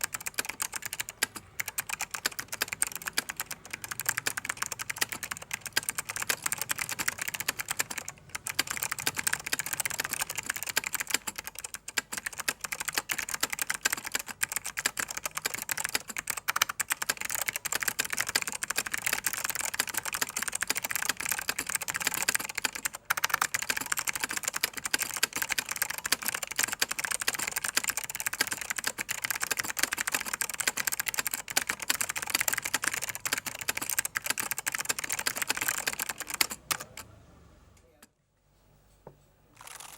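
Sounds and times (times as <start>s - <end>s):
clicky mechanical keyboard typing: 0.0s - 37.1s, 39.6s - 39.9s.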